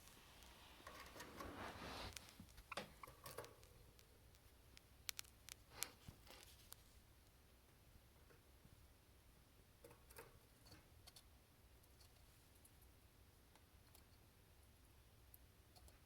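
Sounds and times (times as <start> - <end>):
soft leaf rustle: 0.0 - 2.7.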